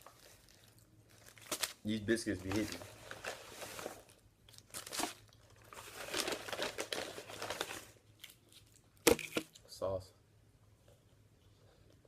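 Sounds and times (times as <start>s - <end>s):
food packaging crinkling and tearing: 0.0s - 9.5s.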